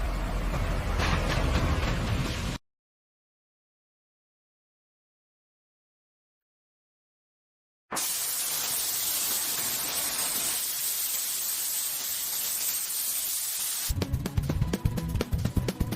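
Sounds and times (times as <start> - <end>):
steady hiss: 7.9 - 14.0
music with a beat: 13.9 - 15.9.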